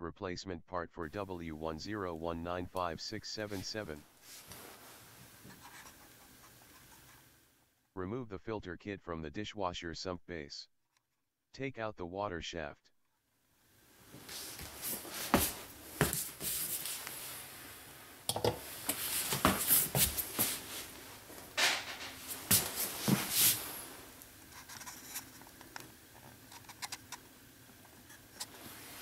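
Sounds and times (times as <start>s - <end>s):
plastic parts clicking and scraping: 24.6s - 27.2s.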